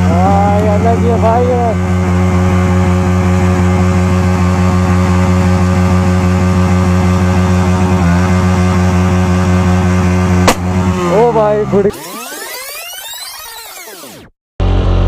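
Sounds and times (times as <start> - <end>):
motorcycle engine at high revs: 0.0 - 15.0.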